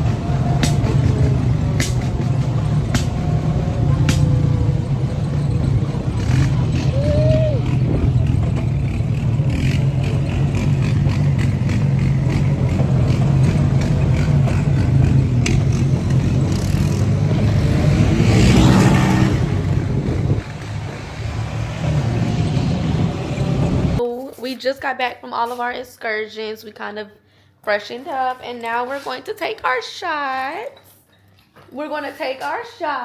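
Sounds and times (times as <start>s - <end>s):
atv engine droning: 0.0s - 24.0s.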